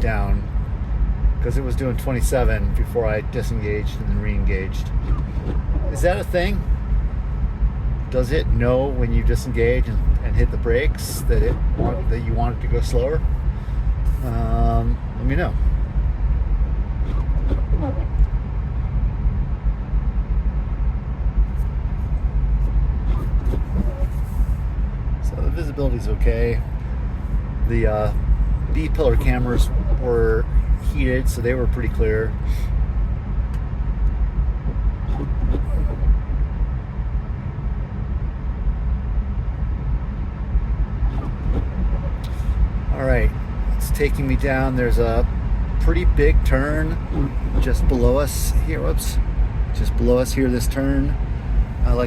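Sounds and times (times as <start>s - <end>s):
tyre and road rumble in car: 0.0s - 52.0s.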